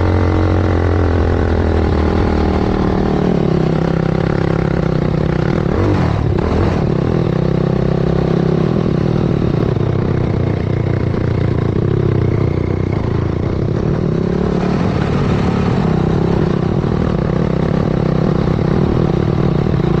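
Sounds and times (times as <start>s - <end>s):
quad engine revving hard: 0.0s - 9.6s.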